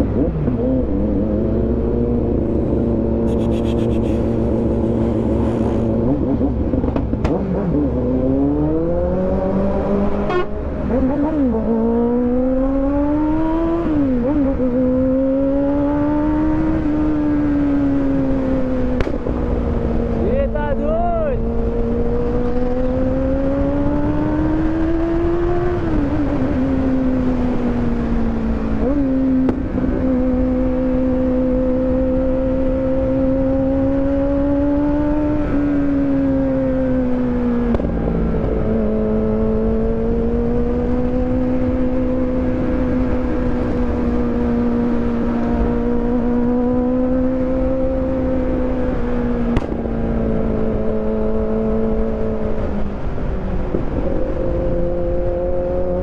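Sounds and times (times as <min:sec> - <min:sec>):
motorcycle engine revving high: 0:00.0 - 0:20.2.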